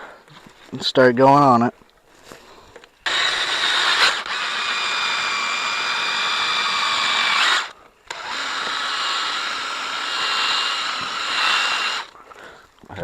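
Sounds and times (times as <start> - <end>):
power drill buffing wheel whirring: 3.0 - 12.2.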